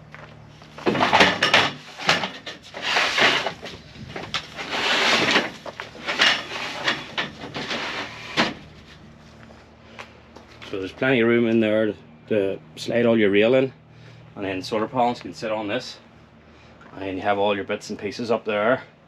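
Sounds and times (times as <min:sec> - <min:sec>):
metal rails knocking and clattering: 0:00.8 - 0:03.6
metal rails scraping on floor: 0:00.8 - 0:08.7.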